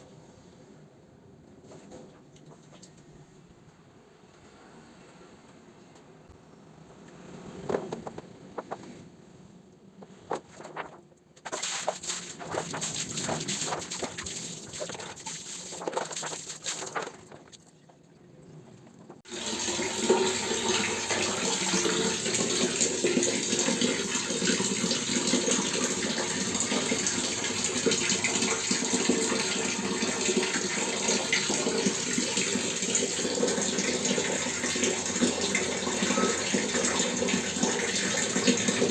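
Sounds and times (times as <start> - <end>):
water running from a tap: 19.3 - 38.9.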